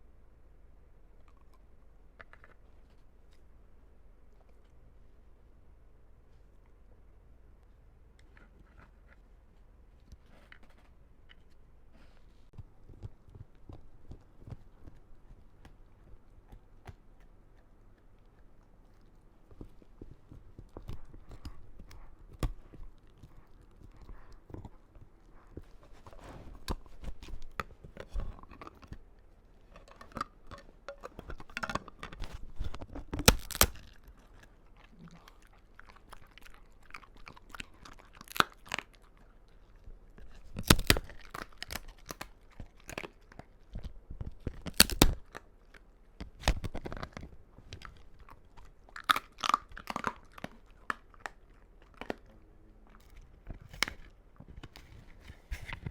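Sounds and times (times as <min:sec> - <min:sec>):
dog chewing hard treat: 0:12.6 - 0:52.3.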